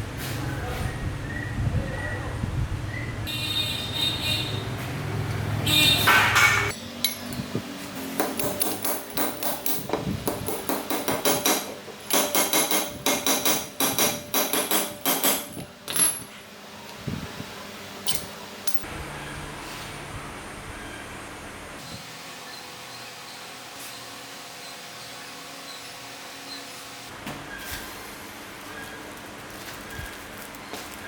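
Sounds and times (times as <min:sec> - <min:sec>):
hammer tapping on metal: 0:08.2 - 0:16.3.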